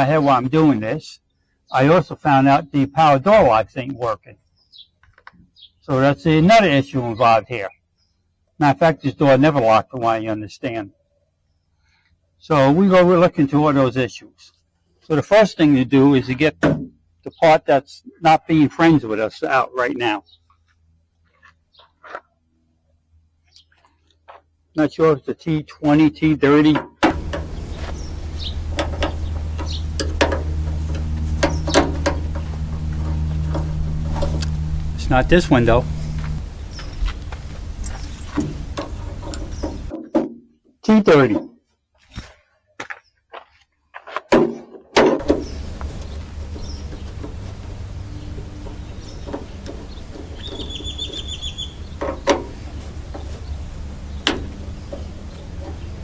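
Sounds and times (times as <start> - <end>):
steady low hum: 27.1 - 39.9, 45.2 - 56.0
rapid bird trill: 27.4 - 30.0, 48.0 - 56.0.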